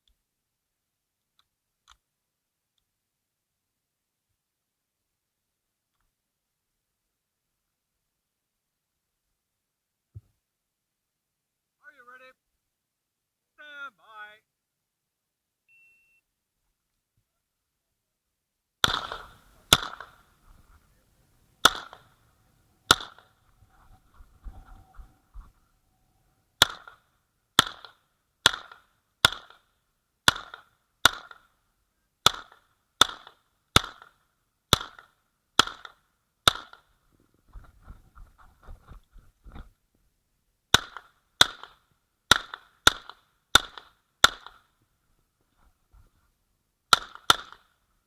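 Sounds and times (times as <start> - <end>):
pistol firing single shots: 18.8 - 20.5, 21.6 - 23.4, 26.6 - 27.0, 27.6 - 29.6, 30.3 - 31.5, 32.2 - 36.8, 40.8 - 44.7, 46.9 - 47.6.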